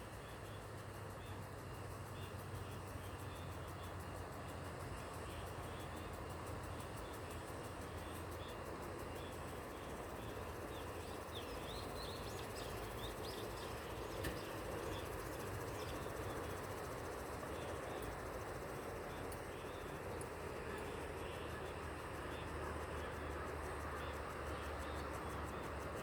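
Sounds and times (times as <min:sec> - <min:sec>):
distant city traffic hum: 0:00.0 - 0:26.0.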